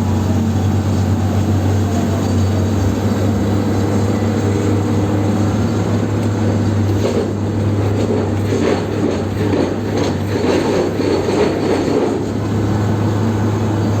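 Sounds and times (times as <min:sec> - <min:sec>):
heavy machine humming: 0:00.0 - 0:14.0
clattering and knocking: 0:06.8 - 0:12.4.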